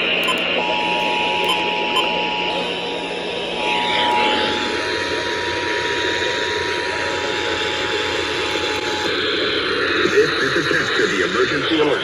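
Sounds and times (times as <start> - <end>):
two-tone alert alarm: 0.0 - 3.0.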